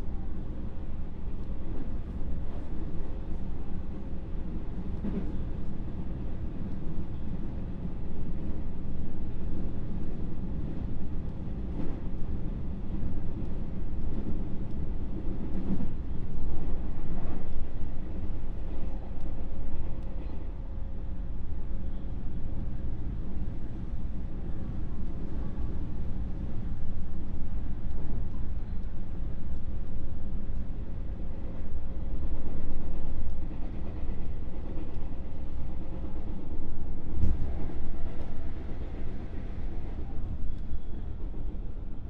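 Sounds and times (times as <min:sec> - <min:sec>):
train wheels rumbling on rail: 0:00.0 - 0:42.0
faint knocks from track: 0:05.0 - 0:05.4, 0:37.1 - 0:39.9.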